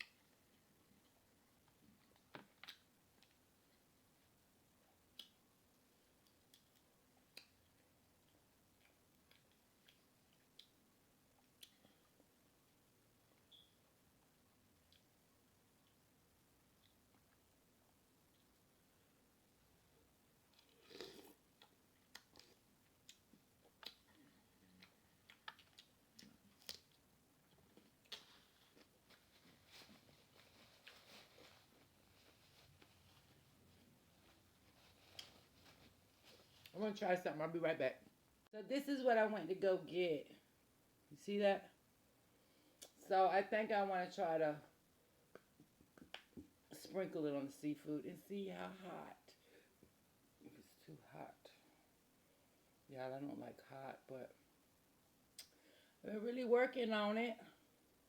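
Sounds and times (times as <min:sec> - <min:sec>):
wet mouth smacks and chewing: 0:20.6 - 0:24.1, 0:24.8 - 0:28.3.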